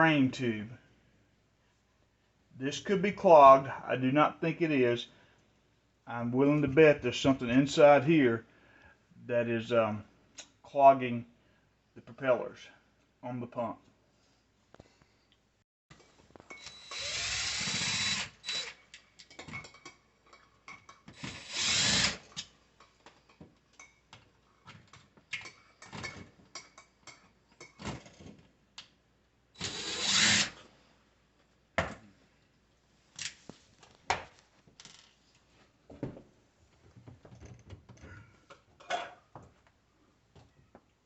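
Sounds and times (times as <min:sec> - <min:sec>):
power drill spinning: 0:16.5 - 0:18.9, 0:21.1 - 0:22.4, 0:29.6 - 0:30.7.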